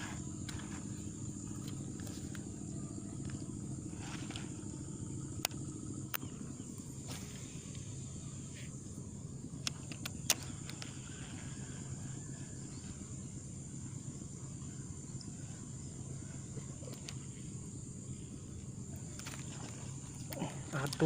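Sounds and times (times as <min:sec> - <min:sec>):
high-pitched insect chorus: 0:00.0 - 0:21.0
sharp clicks: 0:09.6 - 0:11.0.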